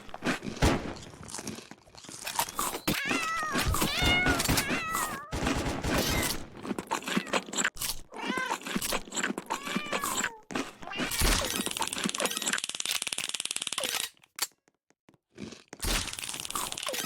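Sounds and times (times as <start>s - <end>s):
cats meowing: 2.9s - 5.4s, 8.1s - 8.8s, 9.4s - 11.3s.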